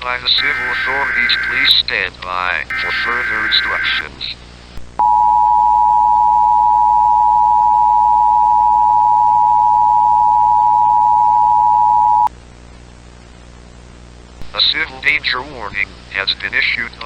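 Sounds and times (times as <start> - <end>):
dual-tone alert signal: 0.3 - 1.8, 2.7 - 4.1.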